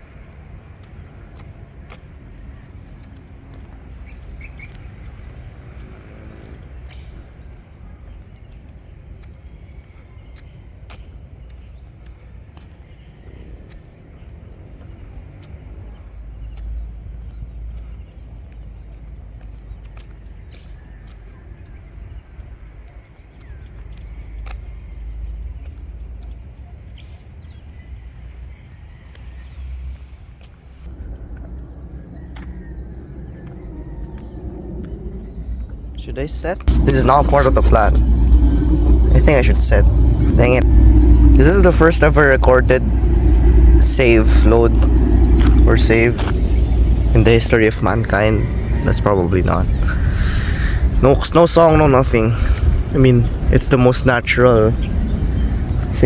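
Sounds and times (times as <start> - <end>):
crickets chirping: 0.0 - 56.0
low rumble on microphone: 30.9 - 56.0.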